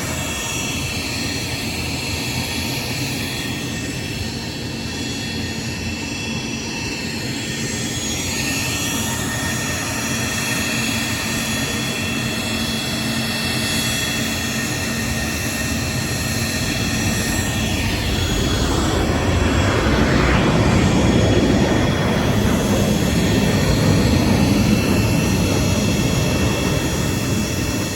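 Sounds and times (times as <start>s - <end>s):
jet engines rushing and whining: 0.0s - 27.9s.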